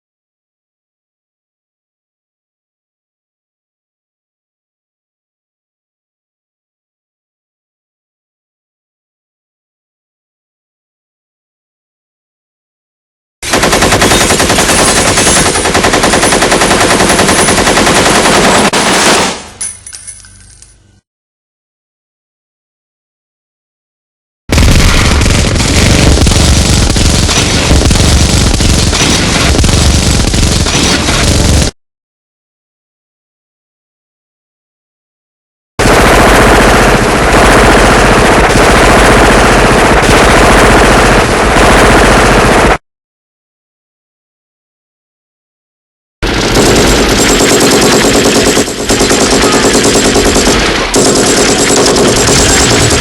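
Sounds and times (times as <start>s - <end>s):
machine gun automatic fire: 13.4s - 19.6s, 24.5s - 31.8s, 35.8s - 42.8s, 46.2s - 53.0s
faint metallic clinks: 19.6s - 21.0s.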